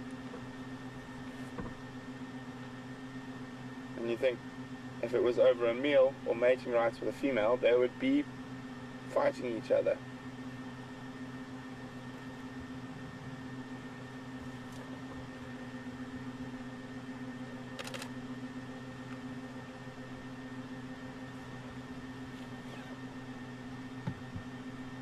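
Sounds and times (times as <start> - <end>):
low mechanical hum: 0.0 - 25.0
sharp click: 17.8 - 18.2.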